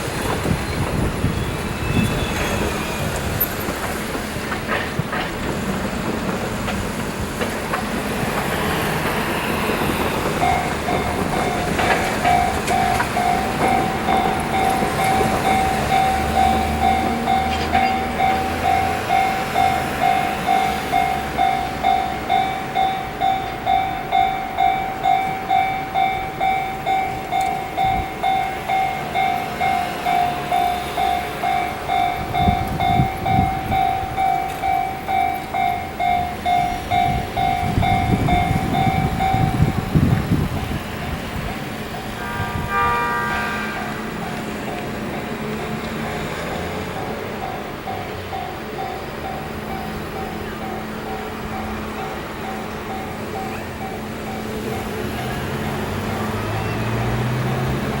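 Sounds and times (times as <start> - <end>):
locomotive low rumble: 0.0 - 42.8
level-crossing alarm ringing: 8.1 - 56.8.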